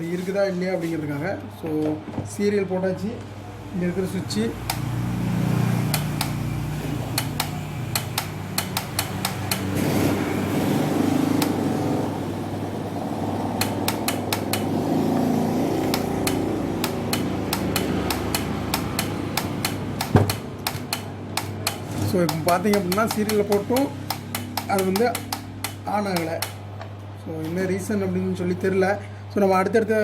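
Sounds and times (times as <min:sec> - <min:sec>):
sharp clicks or taps: 0:05.9 - 0:06.4, 0:07.1 - 0:09.8, 0:11.3 - 0:11.6, 0:13.5 - 0:26.9.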